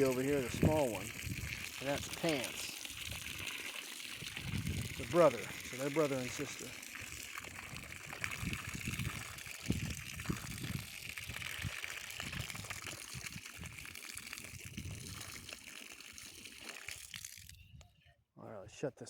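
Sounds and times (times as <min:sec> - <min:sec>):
wind rumbling on microphone: 0:00.0 - 0:02.2, 0:04.2 - 0:05.6, 0:07.0 - 0:15.4
water gushing from hose: 0:00.0 - 0:17.6.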